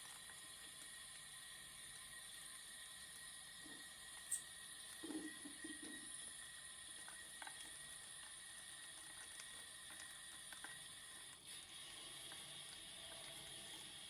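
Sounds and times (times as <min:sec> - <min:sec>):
water running into washing machine: 0:00.0 - 0:14.0.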